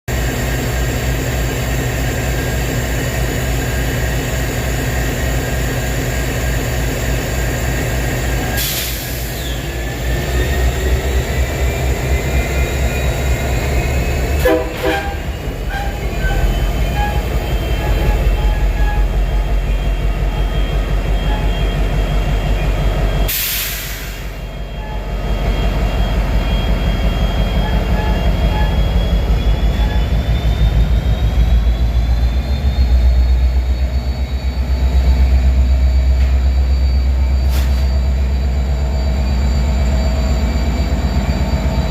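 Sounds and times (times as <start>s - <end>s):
locomotive engine throbbing: 0.1s - 41.9s
short hisses: 23.3s - 24.4s.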